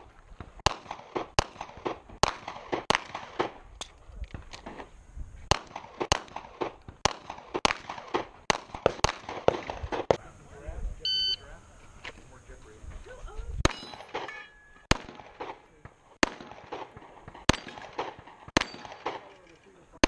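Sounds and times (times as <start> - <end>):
distant gunshots: 0.0 - 3.6, 5.5 - 10.2, 13.6 - 19.3
gunshots: 0.0 - 3.6, 5.5 - 10.2, 13.6 - 19.4.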